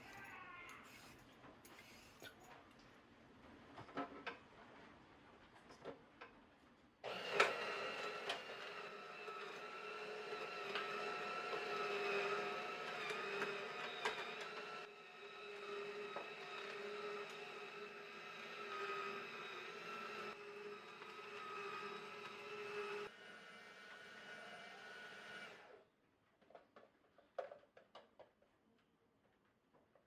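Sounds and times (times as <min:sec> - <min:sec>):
juicer motor whining: 0:07.0 - 0:25.8.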